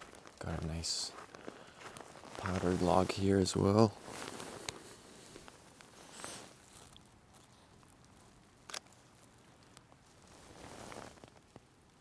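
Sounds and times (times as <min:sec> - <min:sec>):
footsteps on slush: 0:00.0 - 0:05.9.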